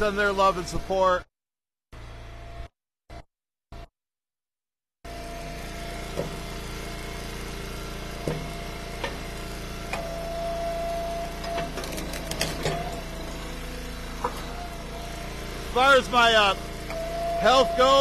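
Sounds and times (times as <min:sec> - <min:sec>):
log splitter engine running: 0:05.1 - 0:18.0.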